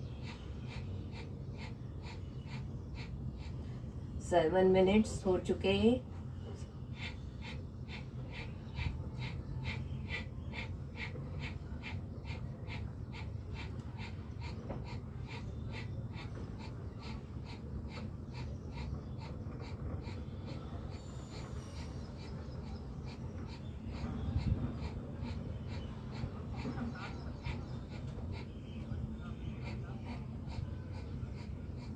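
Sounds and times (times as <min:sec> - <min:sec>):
fast forced nasal breathing: 0:00.0 - 0:04.2, 0:05.0 - 0:31.9.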